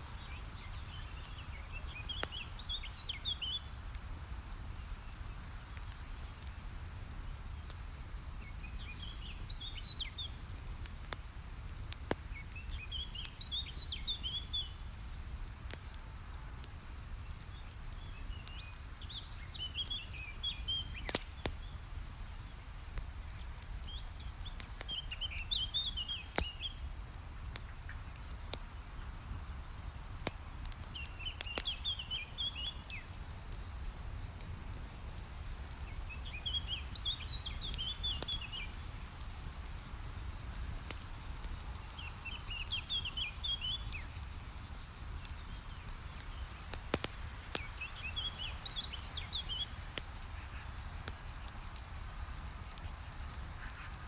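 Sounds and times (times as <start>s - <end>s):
campfire rustling: 0.0s - 54.0s
fire popping and crackling: 0.0s - 54.0s
songbird twittering: 31.0s - 33.1s, 35.9s - 38.8s, 42.0s - 44.2s, 47.4s - 49.8s.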